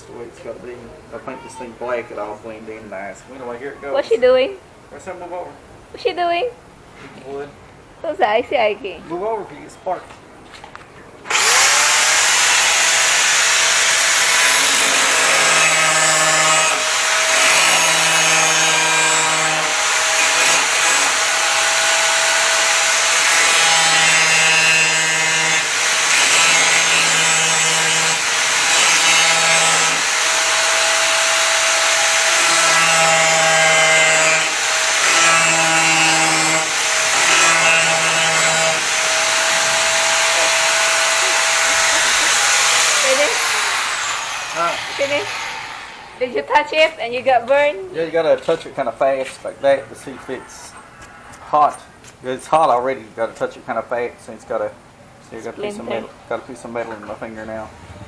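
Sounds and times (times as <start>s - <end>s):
angle grinder grinding metal: 11.3s - 47.3s.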